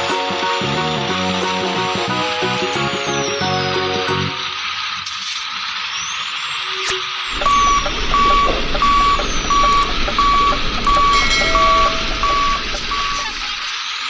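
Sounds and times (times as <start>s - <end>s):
low engine rumble: 7.3s - 13.7s
truck reversing alarm beeping: 7.3s - 13.7s.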